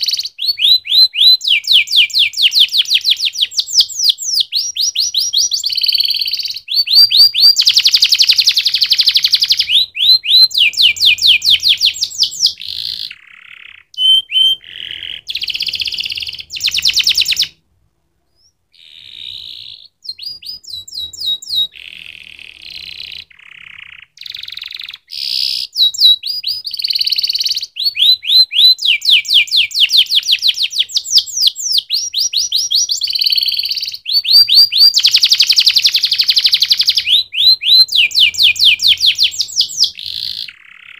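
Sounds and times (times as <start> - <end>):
canary singing trills: 0.0 - 17.6, 18.3 - 40.9.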